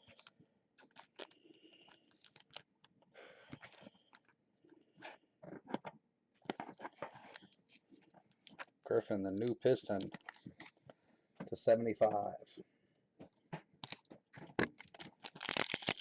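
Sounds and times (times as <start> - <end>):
plastic rustling: 0.0 - 2.7, 13.8 - 16.0
plastic card protectors crinkling: 0.0 - 2.9, 13.8 - 16.0.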